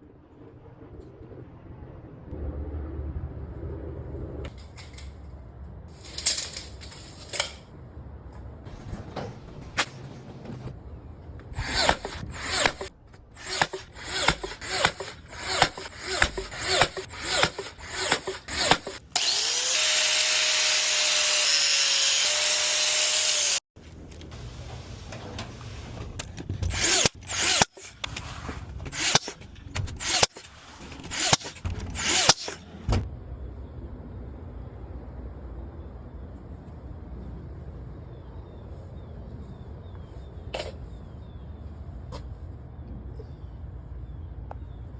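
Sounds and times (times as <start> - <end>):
hand tool rasping strokes: 11.6 - 19.0
power drill running: 11.6 - 23.6, 26.7 - 28.0, 28.9 - 29.3, 30.0 - 30.4.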